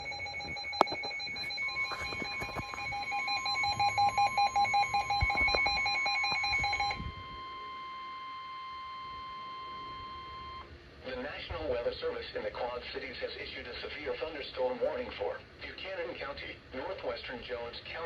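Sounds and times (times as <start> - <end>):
rapid electronic alarm beeping: 0.0 - 10.7
steady warning tone: 0.0 - 10.7.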